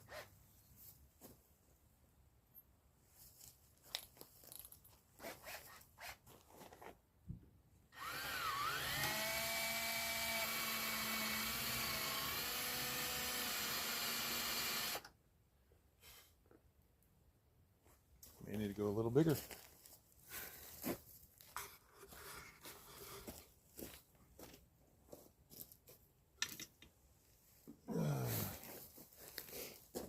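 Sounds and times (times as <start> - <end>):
power drill drilling into rivet: 8.0 - 15.1
small clicks and knocks: 26.4 - 27.0.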